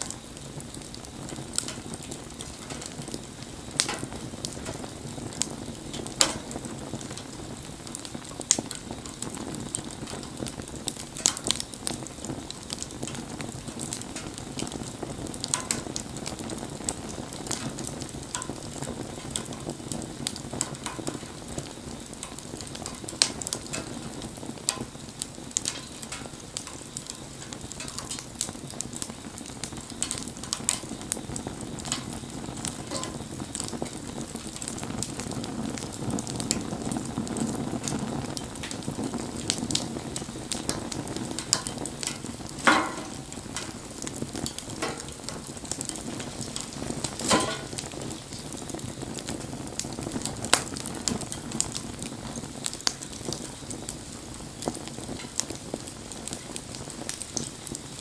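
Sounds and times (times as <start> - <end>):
low rush of flame: 0.0 - 58.0
wood fire crackling: 0.0 - 58.0.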